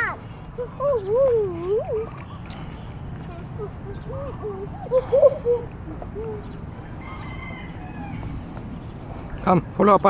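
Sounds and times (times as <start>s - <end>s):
steady low rumble: 0.2s - 9.8s.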